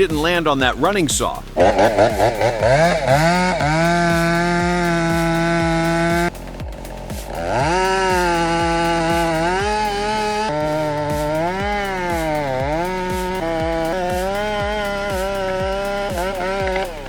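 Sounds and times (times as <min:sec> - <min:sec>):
chainsaw engine revving: 0:01.5 - 0:17.0.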